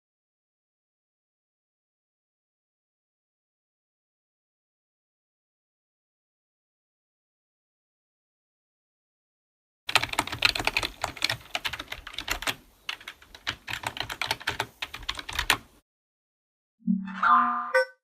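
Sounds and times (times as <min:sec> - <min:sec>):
keyboard typing: 0:09.9 - 0:15.7
short electronic tone: 0:16.8 - 0:18.0.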